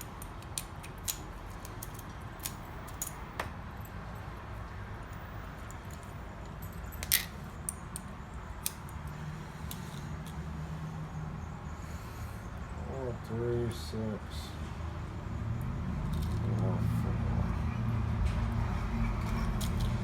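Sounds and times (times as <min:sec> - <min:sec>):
metallic clicks of lock pins: 0:00.0 - 0:04.0, 0:05.1 - 0:10.4, 0:15.6 - 0:16.6, 0:19.2 - 0:20.0.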